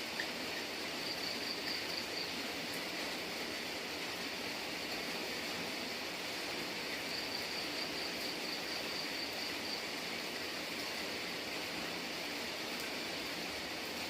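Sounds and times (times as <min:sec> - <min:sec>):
steady rain falling: 0:00.0 - 0:14.0.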